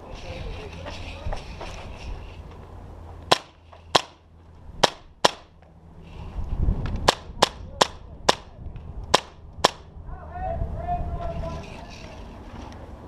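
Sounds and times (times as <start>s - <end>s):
airsoft gun shots: 3.3s - 4.2s, 4.8s - 5.5s, 9.1s - 9.9s.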